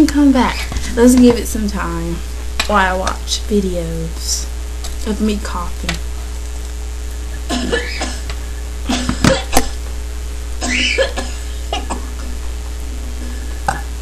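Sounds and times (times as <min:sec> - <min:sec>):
low steady hum: 0:00.0 - 0:14.0
person coughing: 0:07.4 - 0:09.8, 0:10.6 - 0:12.3.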